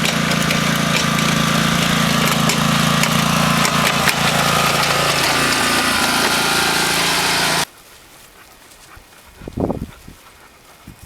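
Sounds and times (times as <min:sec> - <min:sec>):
small engine running: 0:00.0 - 0:07.7.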